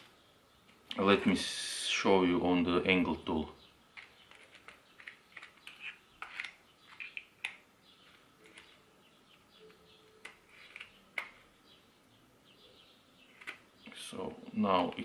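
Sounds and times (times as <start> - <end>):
plastic parts clicking: 3.9 - 8.8, 9.7 - 11.5, 13.3 - 13.7.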